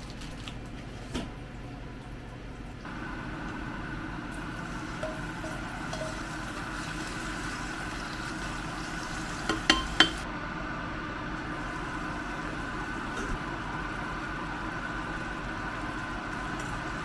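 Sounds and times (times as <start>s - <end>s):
food sizzling in a pan: 2.9s - 10.2s, 11.4s - 17.0s
metal utensil clinking on pan: 5.0s - 6.4s, 9.5s - 10.2s.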